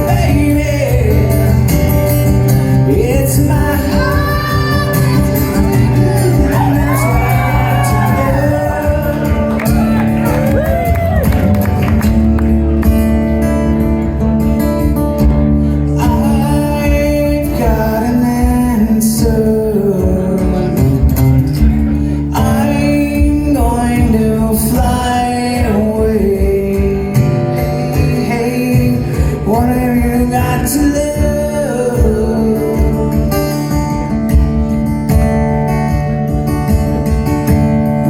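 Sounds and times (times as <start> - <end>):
man singing: 0.0 - 11.7, 15.6 - 34.2
acoustic guitar strumming: 0.0 - 38.0.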